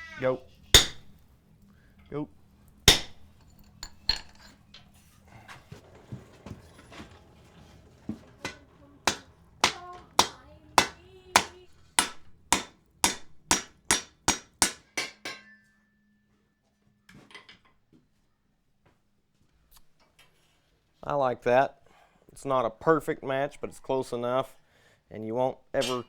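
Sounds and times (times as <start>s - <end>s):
hammer striking steel on anvil: 0.7s - 1.2s, 2.9s - 4.5s, 8.1s - 16.0s.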